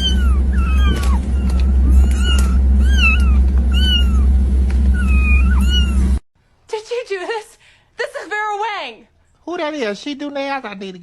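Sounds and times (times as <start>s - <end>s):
cat meowing: 0.0s - 4.3s, 5.0s - 6.2s
steady low hum: 0.0s - 6.2s.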